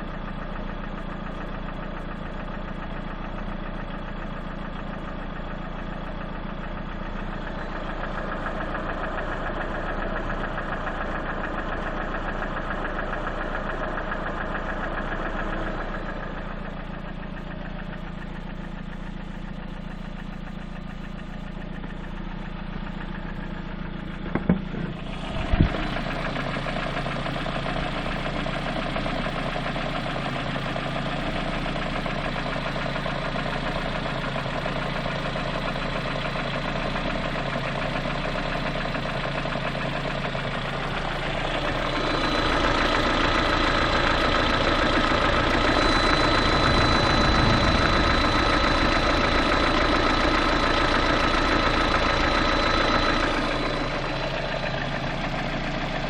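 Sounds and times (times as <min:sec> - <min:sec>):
car engine knocking: 0:00.0 - 0:56.0
steady whine: 0:24.2 - 0:26.2, 0:44.1 - 0:54.2.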